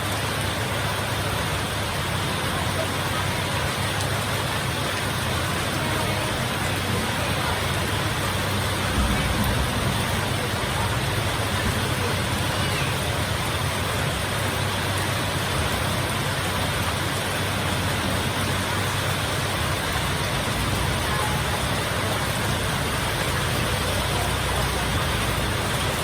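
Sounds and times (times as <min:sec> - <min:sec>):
heavy rain falling: 0:00.0 - 0:26.0
low rumble: 0:08.6 - 0:12.4.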